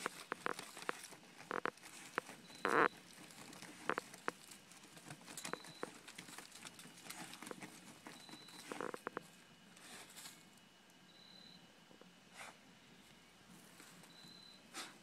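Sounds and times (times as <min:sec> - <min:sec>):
dog paws digging dirt: 0:00.0 - 0:10.4
dog noisy burst: 0:14.7 - 0:15.0.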